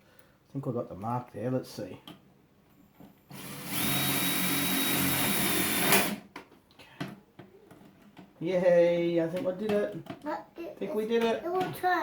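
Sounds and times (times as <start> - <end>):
power drill driving a screw: 3.3 - 6.2.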